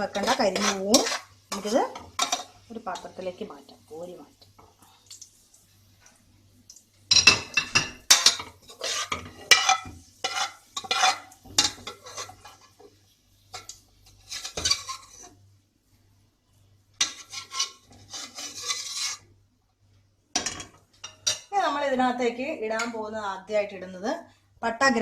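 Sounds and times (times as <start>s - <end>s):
steel ladle scraping frying pan: 0.0s - 3.2s, 7.2s - 12.9s, 13.5s - 15.4s, 17.0s - 19.3s, 20.4s - 21.5s.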